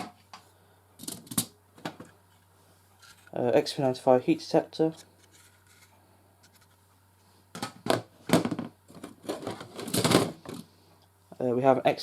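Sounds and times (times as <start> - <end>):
scraping and rustling in a box: 8.9 - 10.5.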